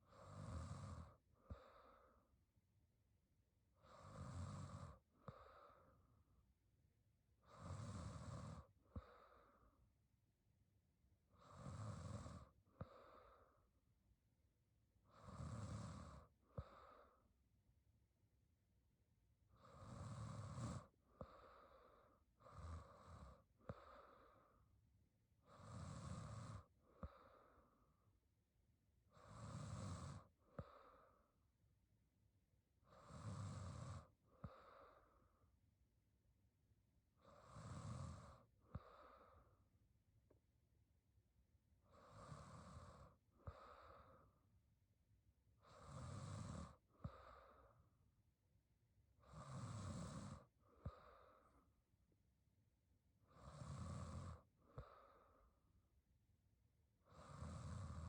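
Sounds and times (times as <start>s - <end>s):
woman snoring quietly: 0.0s - 2.3s, 3.7s - 6.2s, 7.4s - 9.9s, 11.3s - 13.7s, 15.0s - 17.3s, 19.5s - 24.7s, 25.4s - 28.1s, 29.0s - 31.4s, 32.8s - 35.5s, 37.1s - 39.6s, 41.8s - 44.5s, 45.5s - 48.1s, 49.1s - 51.8s, 53.2s - 55.6s, 57.0s - 58.0s.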